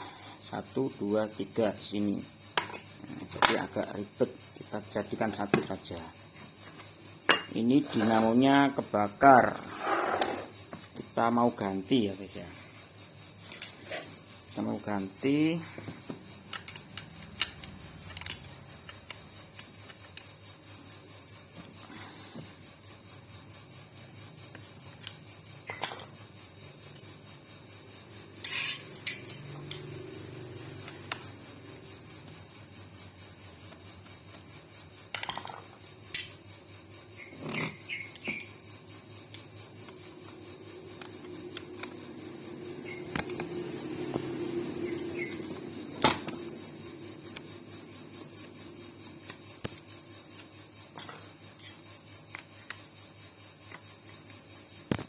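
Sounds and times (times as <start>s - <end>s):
metal scraping: 7.3s - 10.6s
metal clinks and knocks: 28.4s - 29.5s.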